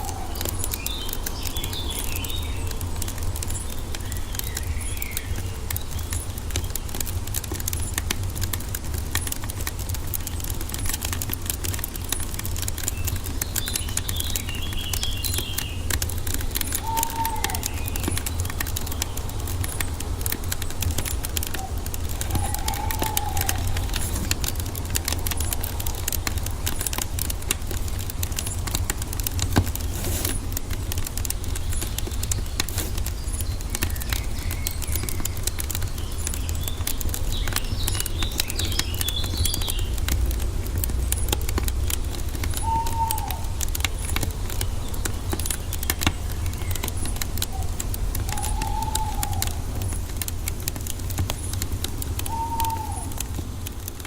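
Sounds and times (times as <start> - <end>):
wood fire crackling: 0.0 - 54.0
high bird twitter: 13.1 - 20.1, 20.8 - 26.4, 42.4 - 50.1, 52.2 - 53.3
bird whistled calls: 16.7 - 18.3, 21.6 - 24.3, 42.5 - 44.1, 46.6 - 49.7, 52.2 - 53.2
steady low rumble: 17.6 - 42.6.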